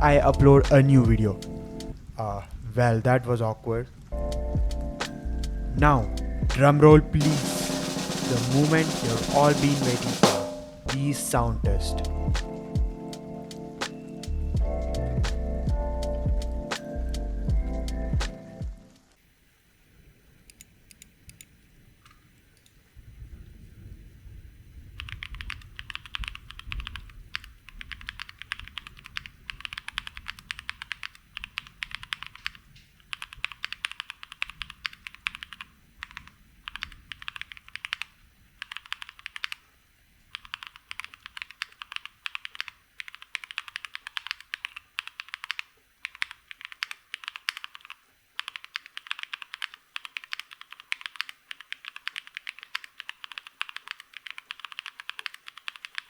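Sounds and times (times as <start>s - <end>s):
mechanical keyboard typing: 25.0s - 39.6s, 40.3s - 56.0s.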